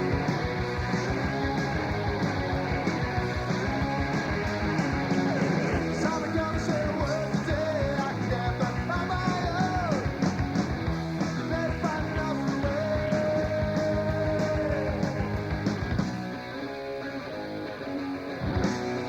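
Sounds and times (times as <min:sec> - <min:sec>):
rock music with guitar and drums: 0:00.0 - 0:19.0
person singing: 0:05.7 - 0:10.1, 0:11.4 - 0:15.4.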